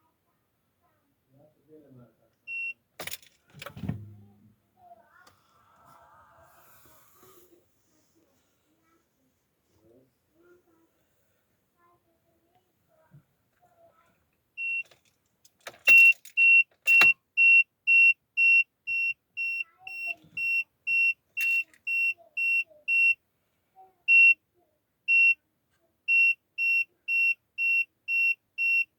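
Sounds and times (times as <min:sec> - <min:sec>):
car warning beeper: 0:02.5 - 0:02.8, 0:15.9 - 0:23.2, 0:24.1 - 0:24.4, 0:25.1 - 0:25.4, 0:26.1 - 0:28.9.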